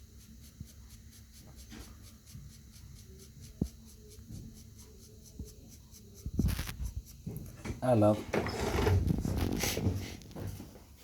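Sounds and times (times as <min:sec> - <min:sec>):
hand tool scratching a screen: 0:00.0 - 0:07.2.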